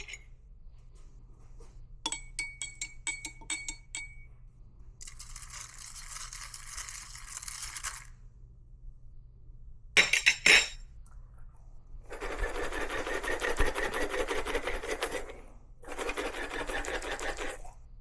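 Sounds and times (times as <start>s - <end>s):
hand coffee grinder crunching beans: 5.0s - 8.1s.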